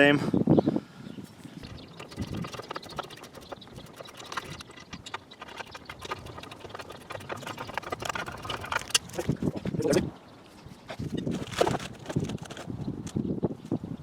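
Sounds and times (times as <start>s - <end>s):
metal parts clicking and knocking: 1.6s - 9.6s, 11.2s - 12.7s.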